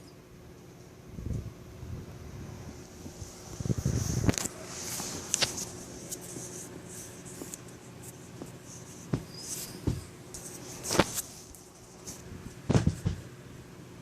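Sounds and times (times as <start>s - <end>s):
faint scratchy rustling: 3.2s - 13.1s.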